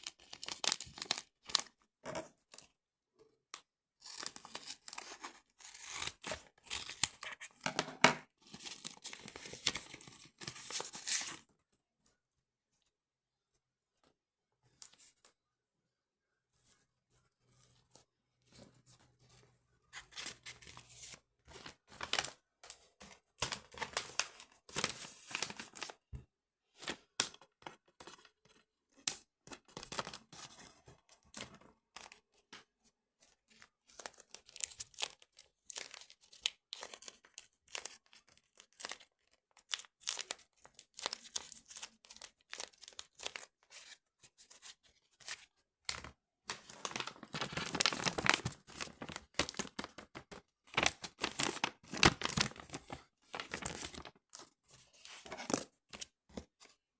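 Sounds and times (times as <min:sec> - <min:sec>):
thin material crinkling and tearing: 0:33.5 - 0:56.8.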